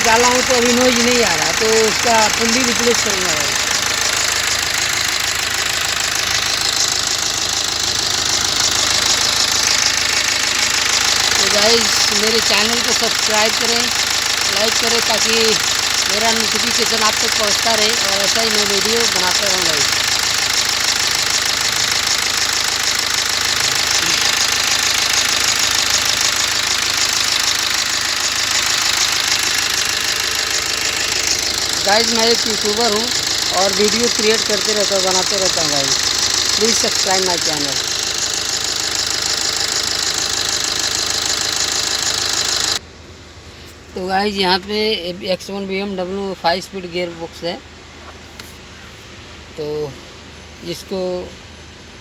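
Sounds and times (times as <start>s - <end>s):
diesel engine idling: 0.0s - 52.0s.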